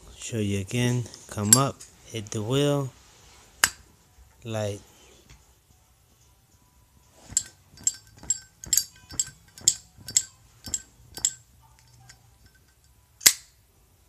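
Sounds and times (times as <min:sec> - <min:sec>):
lighter lid clinking: 0:07.3 - 0:11.4.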